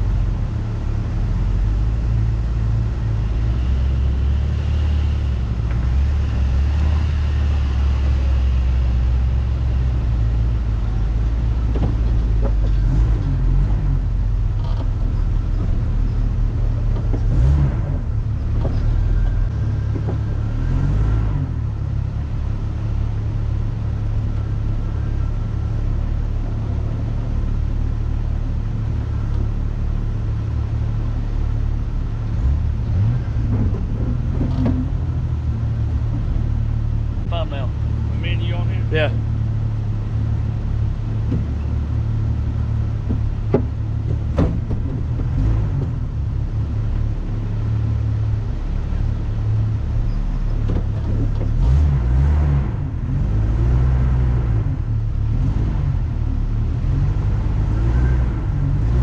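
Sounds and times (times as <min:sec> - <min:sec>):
vehicle engine droning: 0:00.0 - 0:59.0
knocks: 0:43.0 - 0:45.3.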